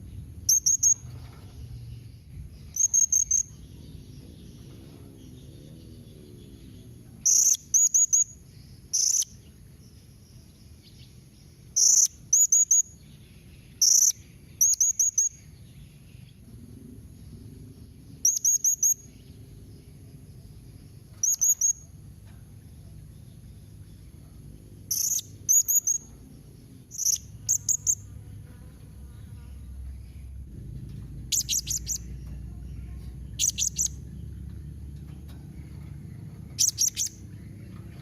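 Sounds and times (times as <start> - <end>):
parrot chirping: 0.5 - 1.0, 2.7 - 3.6, 21.2 - 21.8, 24.9 - 26.1, 26.9 - 28.0, 31.3 - 32.1, 33.4 - 34.0, 36.6 - 37.2.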